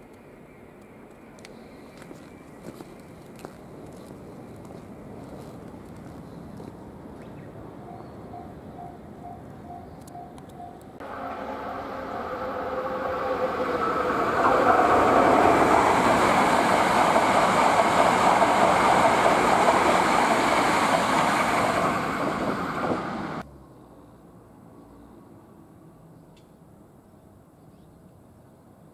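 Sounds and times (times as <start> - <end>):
electric train passing: 1.9 - 23.4.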